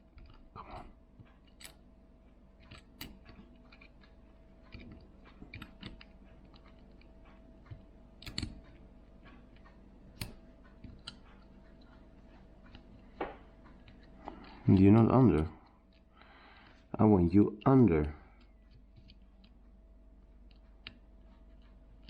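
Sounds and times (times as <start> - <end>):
faint steady hum: 0.0 - 22.0
tools clicking on smartphone parts: 2.6 - 12.0.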